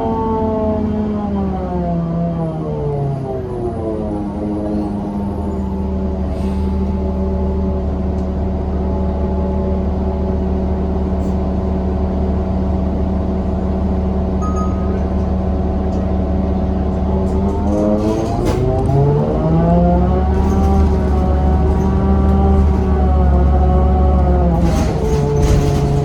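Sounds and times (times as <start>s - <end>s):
bus engine drone and rumble: 0.0s - 26.0s.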